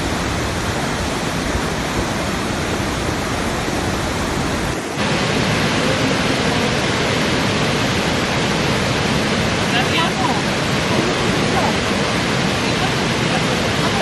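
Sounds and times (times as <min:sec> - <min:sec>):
waterfall rushing: 0:00.0 - 0:14.0.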